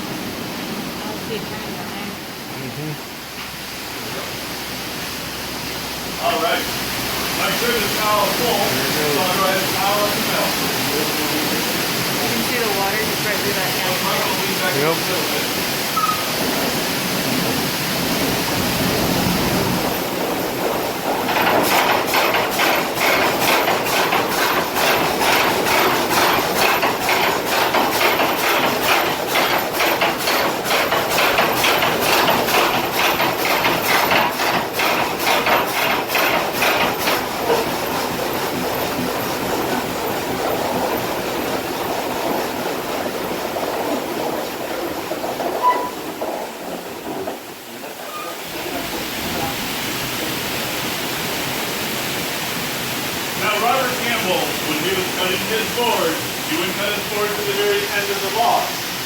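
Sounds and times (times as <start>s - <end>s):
rushing water: 0.0s - 59.0s
saw blade clacking rhythm: 21.6s - 37.7s.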